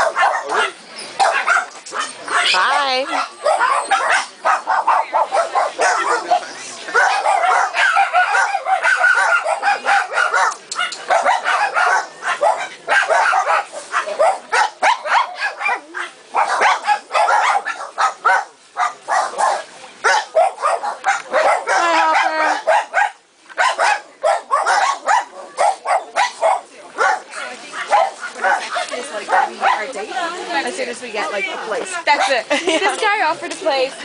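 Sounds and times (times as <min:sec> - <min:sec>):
many dogs barking: 0:00.0 - 0:31.4, 0:32.1 - 0:32.9.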